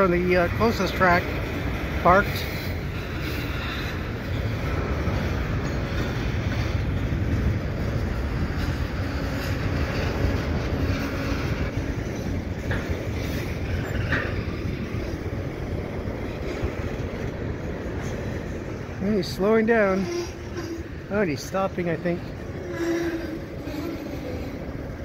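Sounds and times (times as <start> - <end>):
freight train rumbling on tracks: 0.0 - 25.0.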